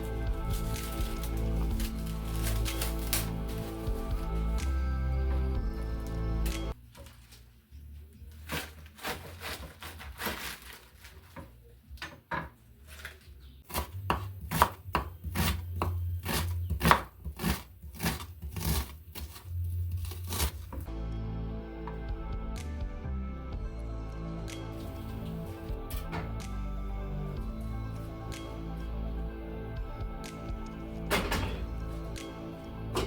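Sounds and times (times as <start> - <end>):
instrumental music with strong bass: 0.0 - 6.8, 20.8 - 33.0
knife chopping on cutting board: 13.7 - 19.4.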